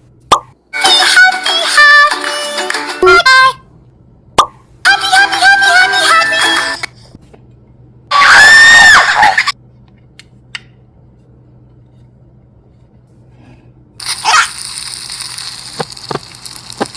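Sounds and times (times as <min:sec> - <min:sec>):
loud high-pitched scream: 0:08.1 - 0:09.5
steady hiss: 0:14.0 - 0:16.9.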